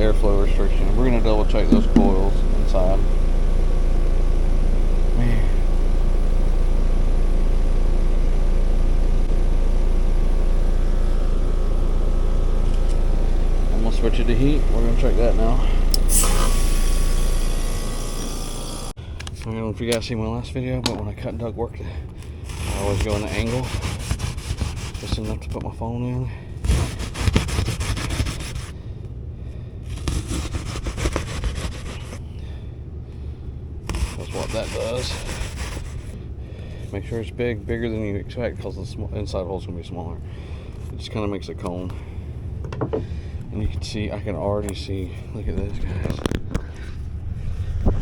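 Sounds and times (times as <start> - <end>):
air conditioner unit humming: 0.0 - 48.0
ductwork being cut by hand: 15.9 - 18.9, 22.2 - 25.6, 26.6 - 28.7, 29.8 - 32.2, 33.9 - 36.2.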